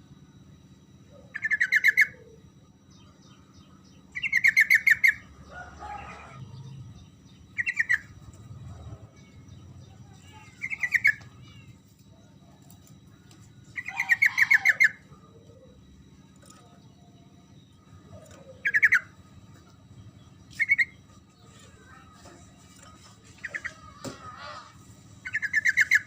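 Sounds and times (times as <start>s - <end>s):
faint low hum: 0.0s - 26.0s
bird calling rapid notes: 13.7s - 15.2s, 18.2s - 19.2s, 20.5s - 21.0s, 23.4s - 26.0s.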